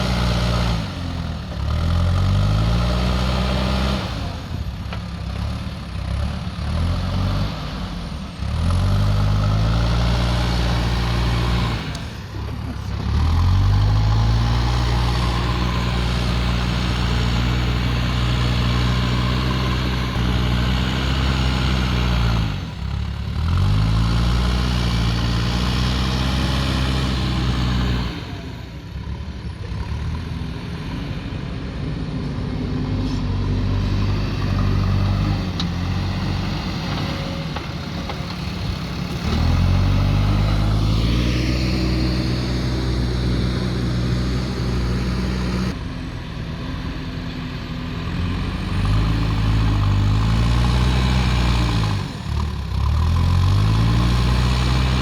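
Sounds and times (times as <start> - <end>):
diesel engine running hard: 0.0 - 55.0.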